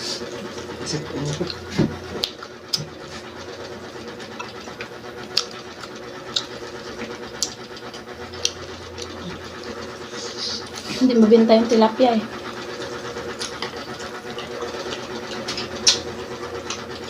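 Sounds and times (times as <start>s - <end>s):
steady low hum: 0.0s - 17.0s
chewing crunchy fried food: 0.1s - 11.0s, 12.3s - 17.0s.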